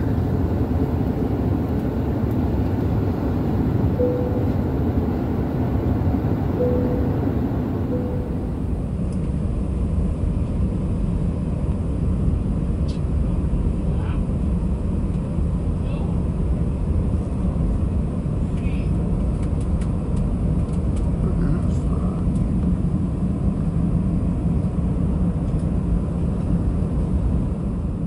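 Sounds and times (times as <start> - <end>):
jet engine cabin rumble: 0.0 - 28.0
faint brief tones: 4.0 - 4.8, 6.6 - 8.7.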